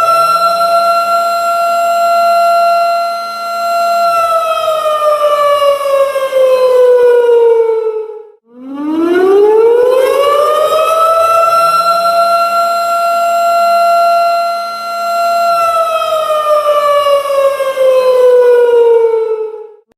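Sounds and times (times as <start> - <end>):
siren sliding in pitch: 4.3 - 19.8.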